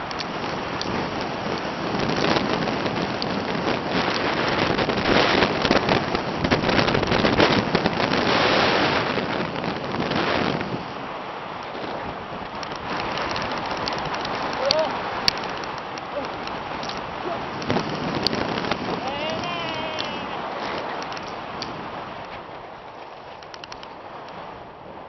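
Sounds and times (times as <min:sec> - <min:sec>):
wind buffeting microphone: 0:00.0 - 0:25.0.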